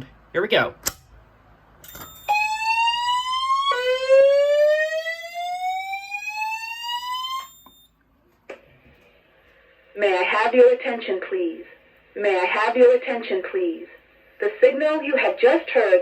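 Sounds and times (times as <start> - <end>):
whoop evacuation tone: 2.2 - 7.5.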